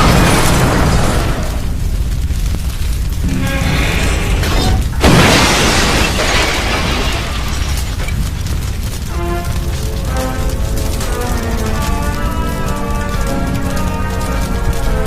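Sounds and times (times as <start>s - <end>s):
sudden loud boom: 3.2s - 7.6s
music with low rumble: 8.0s - 15.0s.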